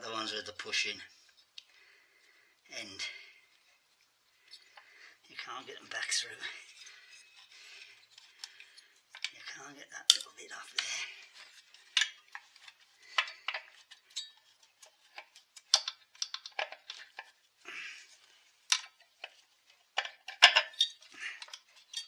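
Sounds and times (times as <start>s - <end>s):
small parts and tools clinking: 4.4s - 22.0s.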